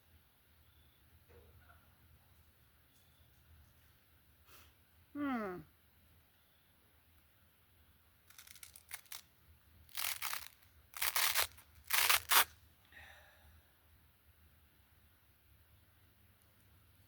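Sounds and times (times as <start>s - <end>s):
sandpaper rasping and tearing: 9.9s - 12.5s.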